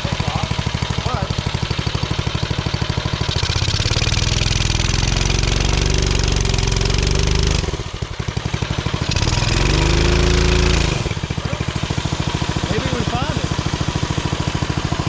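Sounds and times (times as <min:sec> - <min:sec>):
mini bike engine revving: 0:00.0 - 0:15.0.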